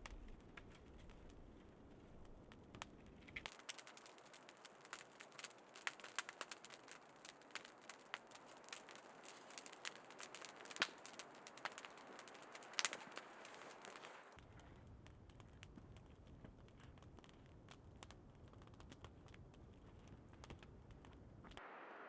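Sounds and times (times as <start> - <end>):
wood fire crackling and popping: 0.0 - 21.6.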